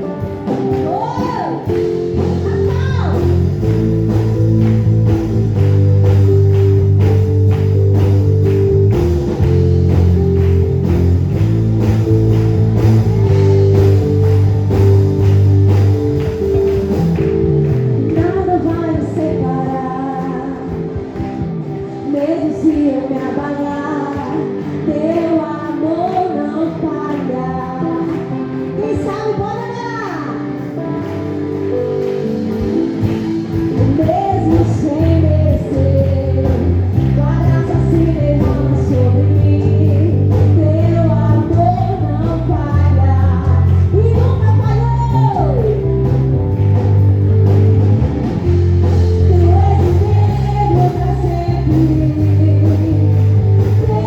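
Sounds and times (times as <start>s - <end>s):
heavy bass: 0.0s - 21.6s, 31.7s - 54.0s
guitar: 0.0s - 54.0s
person singing: 49.1s - 54.0s.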